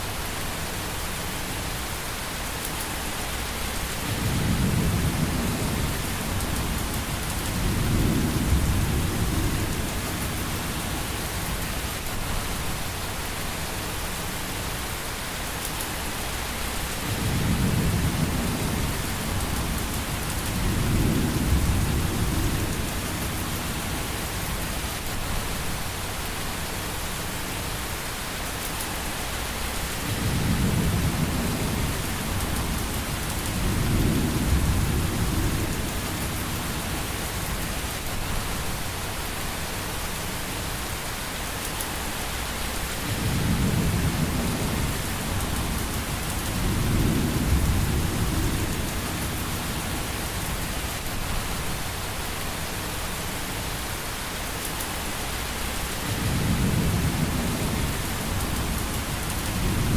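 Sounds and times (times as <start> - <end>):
rain hiss: 0.0 - 59.9.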